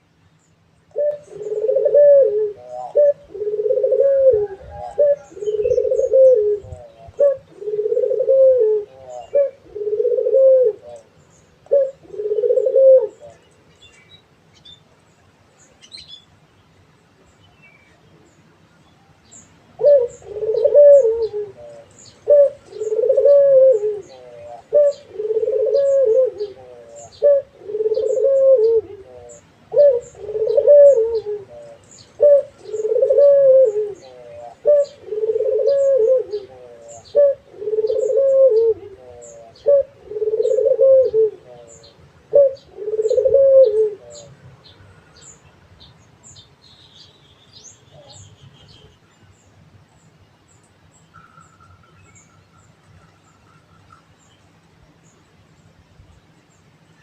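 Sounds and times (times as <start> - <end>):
dove cooing: 0.9 - 13.4, 19.8 - 44.4.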